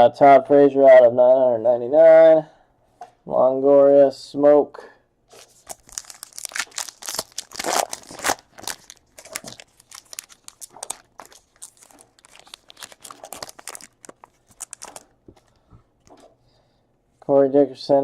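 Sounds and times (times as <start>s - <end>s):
card pack wrappers crinkling: 5.3s - 16.3s.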